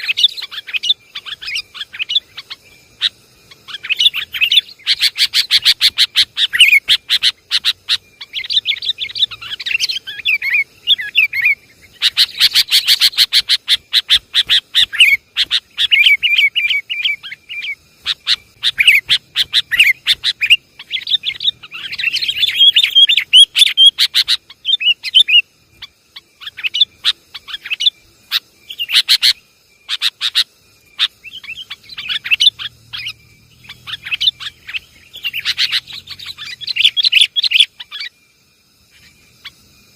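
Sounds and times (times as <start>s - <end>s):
bulbuls calling: 0.0s - 38.2s.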